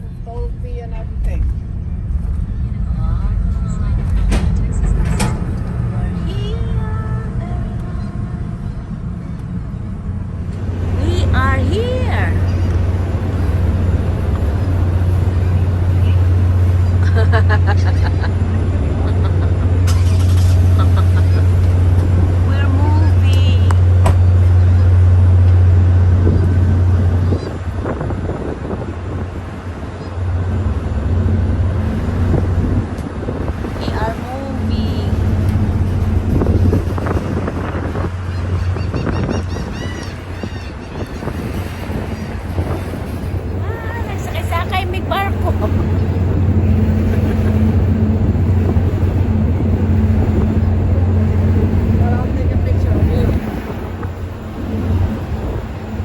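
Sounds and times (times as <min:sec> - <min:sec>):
low engine hum: 0:00.0 - 0:56.0
road noise: 0:00.0 - 0:56.0.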